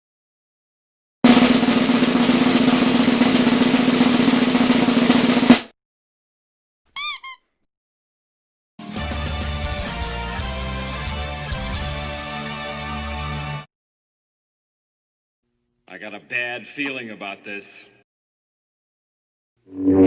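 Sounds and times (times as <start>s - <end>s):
snare drum roll: 1.2s - 5.7s
quick chirps: 7.0s - 7.4s.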